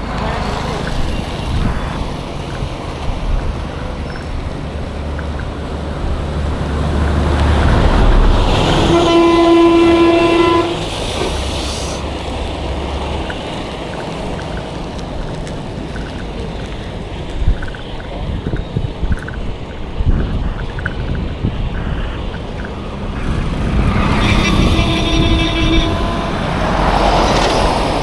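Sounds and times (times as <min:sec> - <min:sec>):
vehicle passing: 0:00.0 - 0:19.1, 0:20.0 - 0:28.0
wind on microphone: 0:00.4 - 0:28.0
vehicle horn blast: 0:08.6 - 0:11.0, 0:23.9 - 0:27.3.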